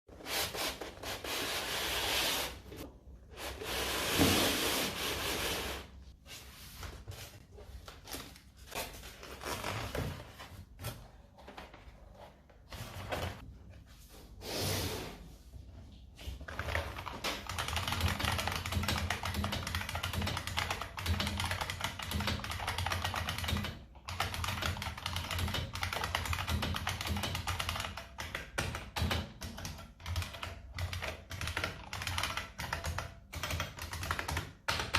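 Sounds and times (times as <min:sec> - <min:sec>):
keyboard keys clicking: 0:16.8 - 0:34.9.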